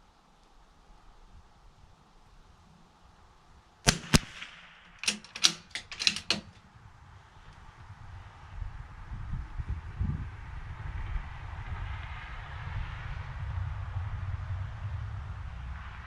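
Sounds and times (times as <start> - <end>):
rifle shots: 3.9 - 6.5
short clicks: 3.9 - 6.6.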